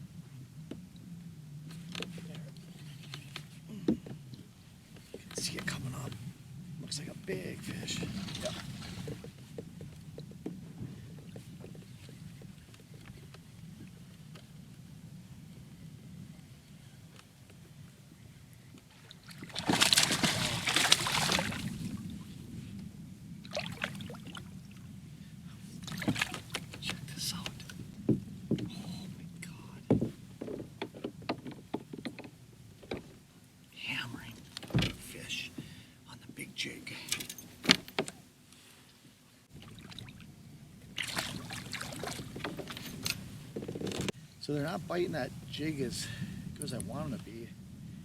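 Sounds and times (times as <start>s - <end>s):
fishing gear clicking and rustling: 1.7s - 6.2s, 19.5s - 21.9s, 37.1s - 38.2s, 41.0s - 44.2s
water splashing beside kayak: 7.5s - 13.4s, 18.8s - 22.6s, 23.4s - 24.9s, 25.7s - 29.2s, 39.5s - 46.5s.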